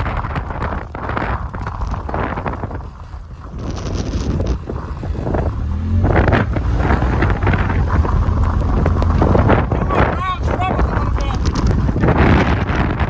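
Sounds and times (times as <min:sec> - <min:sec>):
wind buffeting microphone: 0:00.0 - 0:13.0
engine revving: 0:01.2 - 0:13.0.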